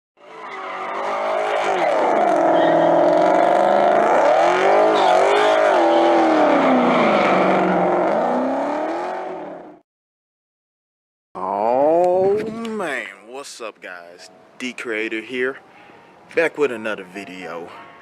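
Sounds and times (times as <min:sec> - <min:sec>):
car engine revving: 0:00.2 - 0:09.8.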